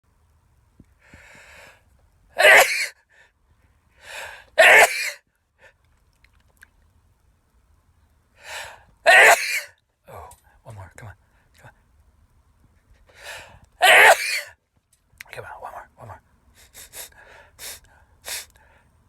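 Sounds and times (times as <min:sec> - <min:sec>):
man sneezing: 0:02.4 - 0:03.0, 0:04.6 - 0:05.2, 0:09.1 - 0:09.7, 0:13.8 - 0:14.5.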